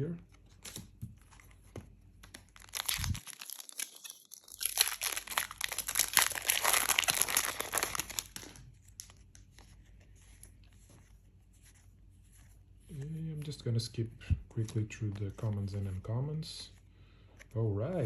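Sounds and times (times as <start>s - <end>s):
foil wrapper crinkling and tearing: 2.3s - 9.4s.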